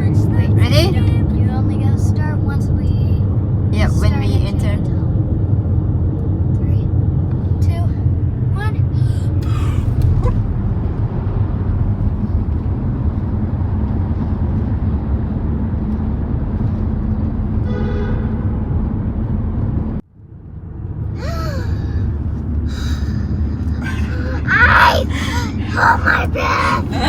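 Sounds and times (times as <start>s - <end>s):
road rumble inside car: 0.0s - 27.0s
short voice sound: 23.8s - 27.0s.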